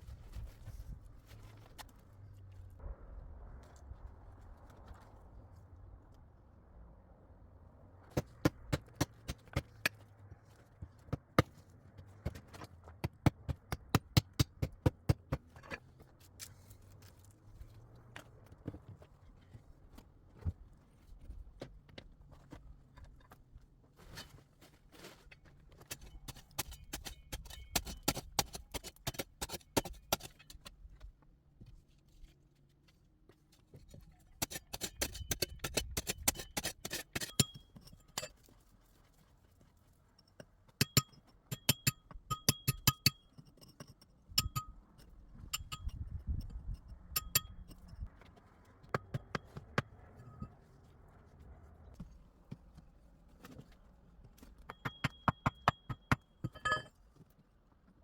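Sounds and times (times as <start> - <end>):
metal tool striking rock: 25.9 - 30.6, 34.4 - 38.3, 40.8 - 48.0, 54.6 - 56.9.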